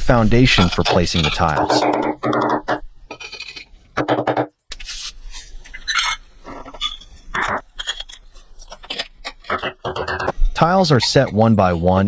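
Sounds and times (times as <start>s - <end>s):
scraping on clay floor: 4.7s - 12.0s.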